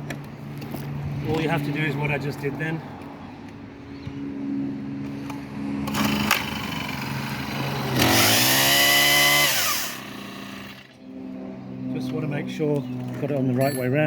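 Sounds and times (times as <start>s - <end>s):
chainsaw engine revving: 5.8s - 11.0s.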